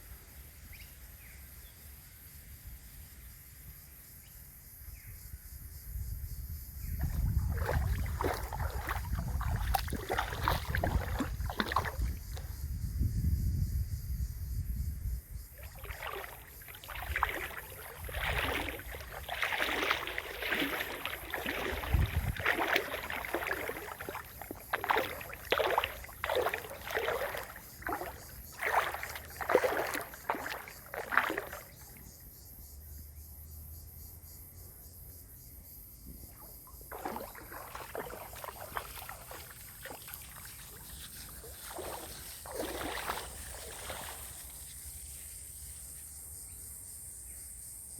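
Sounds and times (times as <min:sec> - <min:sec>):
water splashing from swimming strokes: 0:07.0 - 0:12.5, 0:15.6 - 0:32.0, 0:36.8 - 0:44.6.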